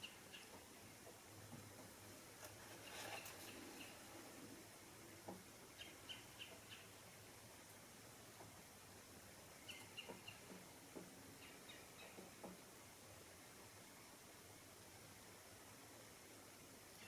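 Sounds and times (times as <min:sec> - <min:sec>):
small bird chirping: 0:00.0 - 0:00.6, 0:05.8 - 0:07.0, 0:09.6 - 0:10.5.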